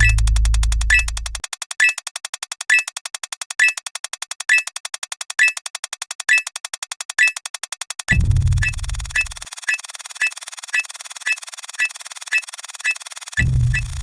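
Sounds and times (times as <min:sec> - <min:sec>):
deep synth note: 0:00.0 - 0:01.4
pitched synth blip: 0:00.0 - 0:02.0, 0:08.6 - 0:09.3
fast synth clicks: 0:00.0 - 0:14.0.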